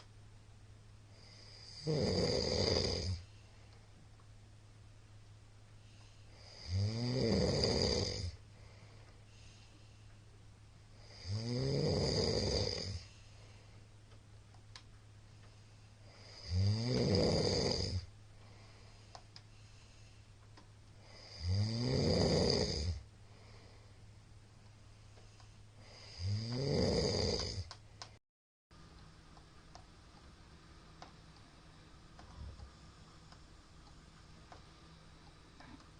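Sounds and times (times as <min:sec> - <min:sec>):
man snoring loudly: 0:01.2 - 0:03.3, 0:06.4 - 0:08.4, 0:11.0 - 0:13.1, 0:16.1 - 0:18.1, 0:21.0 - 0:23.0, 0:25.8 - 0:27.7.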